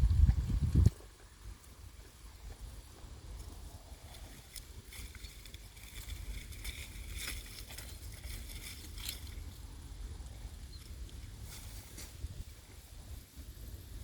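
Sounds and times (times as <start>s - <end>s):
wind rumbling on microphone: 0.0s - 14.0s
leaves rustling and crackling: 3.4s - 14.0s.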